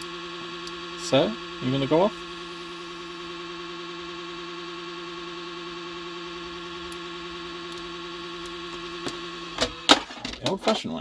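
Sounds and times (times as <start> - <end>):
steady electronic alarm tone: 0.0 - 10.3
clicks: 7.7 - 10.8.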